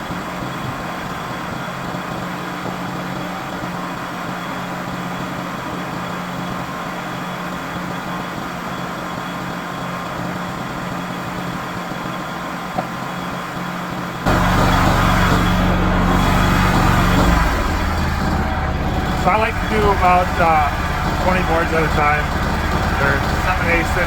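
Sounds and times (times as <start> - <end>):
sawmill engine running: 14.2 - 24.0.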